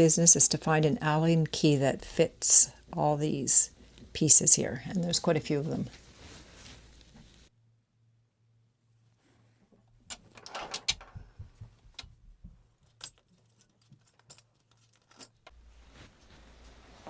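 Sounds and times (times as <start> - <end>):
metal keys clinking and rattling: 10.0 - 12.2, 12.8 - 15.5.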